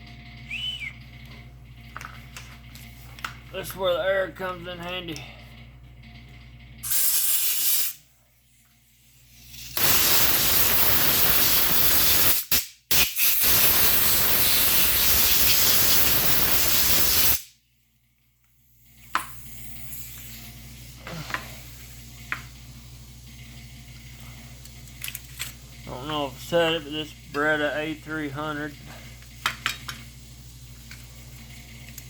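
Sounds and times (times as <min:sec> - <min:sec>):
compressed air hissing: 0:06.8 - 0:08.0, 0:09.3 - 0:17.5, 0:19.3 - 0:22.1.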